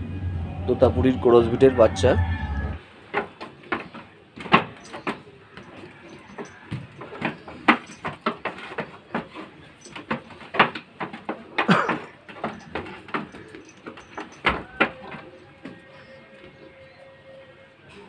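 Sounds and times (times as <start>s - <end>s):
goats' hooves clicking and knocking: 2.8s - 17.1s.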